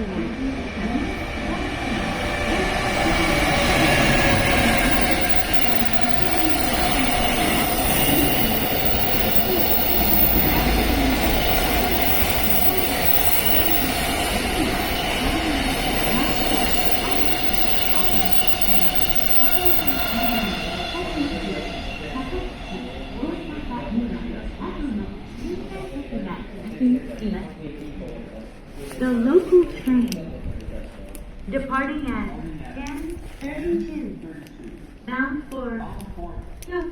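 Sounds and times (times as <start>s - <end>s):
train wheels rumbling on rail: 0.0s - 25.8s
faint steady whine: 1.2s - 21.3s.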